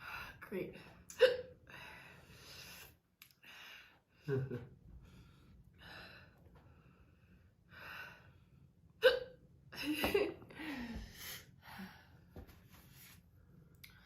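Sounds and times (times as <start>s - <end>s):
woman hiccuping: 9.0s - 9.4s.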